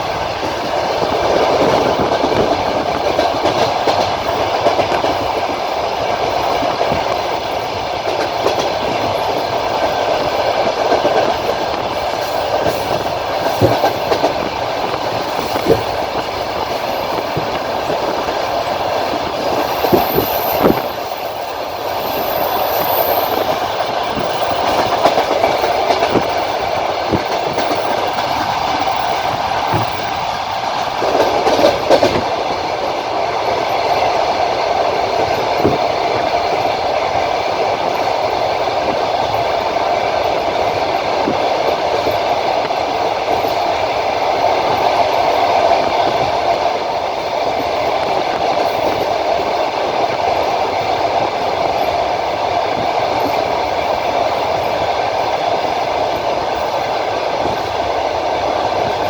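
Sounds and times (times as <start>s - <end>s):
train wheels rumbling on rails: 0.0s - 59.0s
wheels clacking over rail joints: 0.0s - 59.0s.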